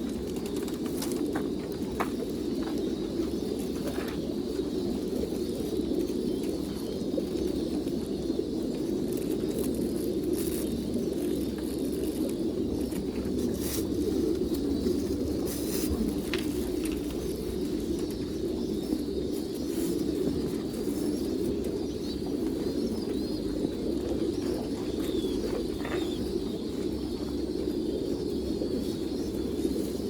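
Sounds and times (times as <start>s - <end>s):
pigeons cooing: 0.0s - 30.0s.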